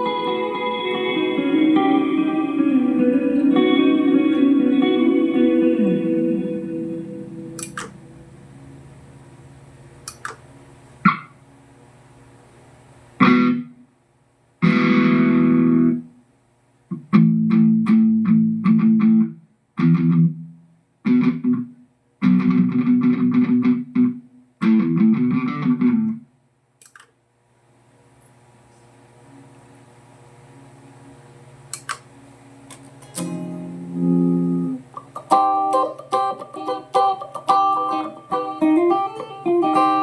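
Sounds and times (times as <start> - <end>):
distorted electric guitar riffing: 0.0 - 8.2, 13.2 - 13.8, 14.6 - 16.0, 33.2 - 40.0.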